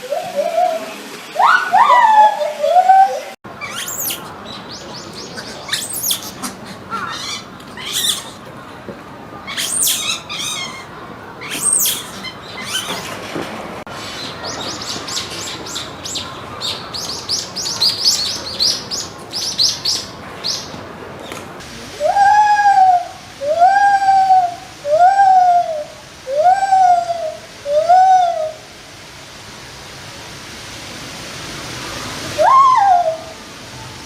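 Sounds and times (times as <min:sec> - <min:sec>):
steady background hiss: 0:00.0 - 0:34.0
monkeys chirping and squeaking: 0:03.6 - 0:08.5, 0:09.5 - 0:13.2.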